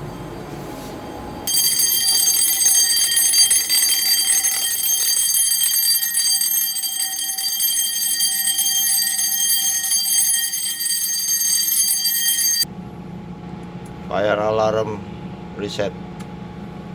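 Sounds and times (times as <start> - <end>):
shrill fire alarm ringing: 1.5 - 12.7.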